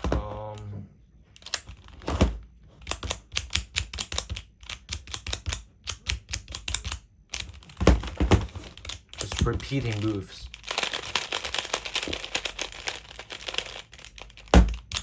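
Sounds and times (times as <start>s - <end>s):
plastic puzzle tiles clicking: 8.6s - 15.0s.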